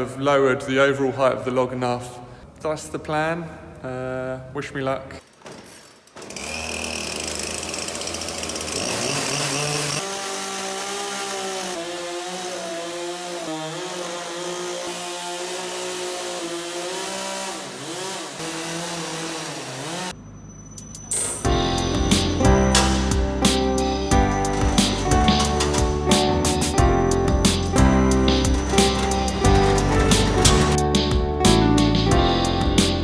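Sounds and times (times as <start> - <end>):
sawmill cutting log: 6.2 - 20.2, 21.7 - 30.8.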